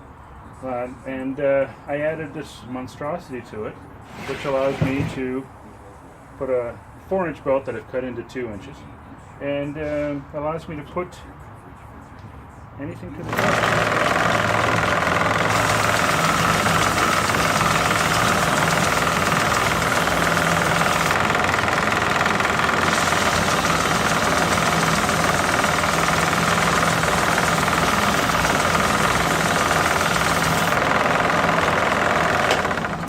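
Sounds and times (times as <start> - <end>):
belt grinder running: 13.2 - 33.0.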